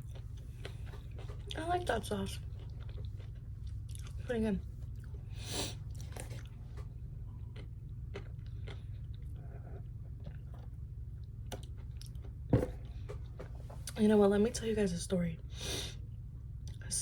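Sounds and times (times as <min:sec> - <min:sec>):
person chewing and biting food: 0:00.0 - 0:01.6, 0:02.4 - 0:04.2, 0:04.9 - 0:10.8
mouth clicks and crunches: 0:05.9 - 0:09.5.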